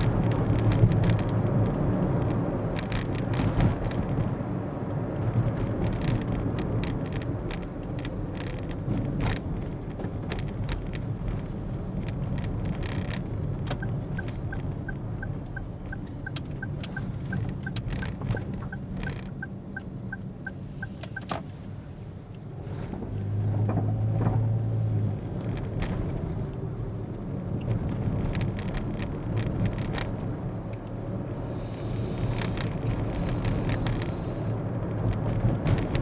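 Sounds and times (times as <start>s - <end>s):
car road and engine rumble: 0.0s - 36.0s
light ticking: 13.6s - 21.3s.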